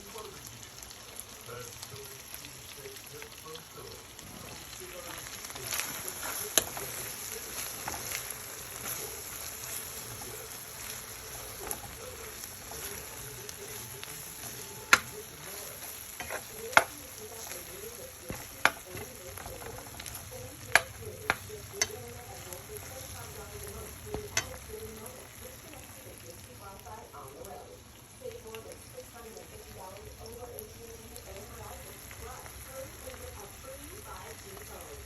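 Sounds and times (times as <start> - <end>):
food sizzling in a frying pan: 0.0 - 35.0
utensil knocking against pan: 18.3 - 22.0, 24.1 - 24.6.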